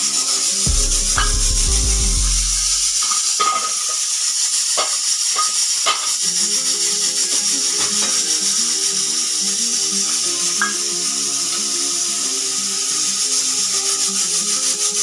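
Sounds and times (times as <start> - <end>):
background music: 0.7 - 3.1
pressure cooker steam hissing: 4.0 - 15.0.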